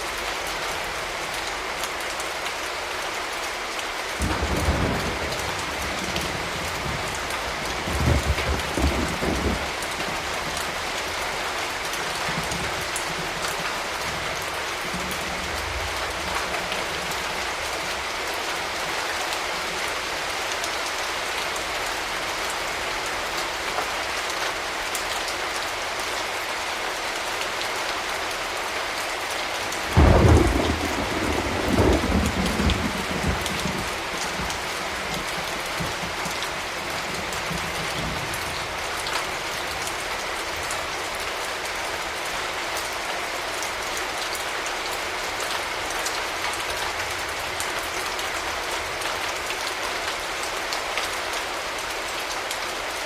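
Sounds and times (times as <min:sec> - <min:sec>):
steady rain: 0:00.0 - 0:53.0
thunder clap and rumble: 0:04.2 - 0:10.9, 0:29.9 - 0:38.6.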